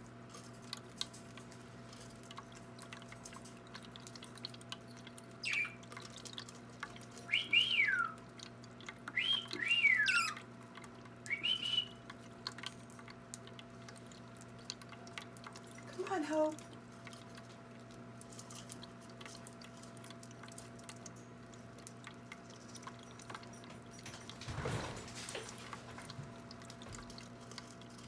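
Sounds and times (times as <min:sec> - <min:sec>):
water fountain trickling: 0:00.1 - 0:28.0
parakeets whistling calls: 0:05.4 - 0:05.8, 0:07.3 - 0:08.2, 0:09.2 - 0:10.4.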